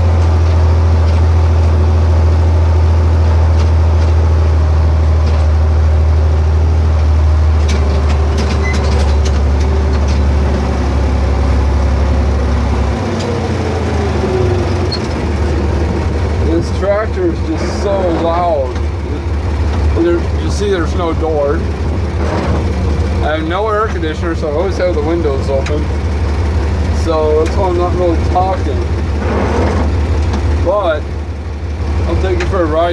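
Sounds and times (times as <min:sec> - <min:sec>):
tractor engine running: 0:00.0 - 0:32.9.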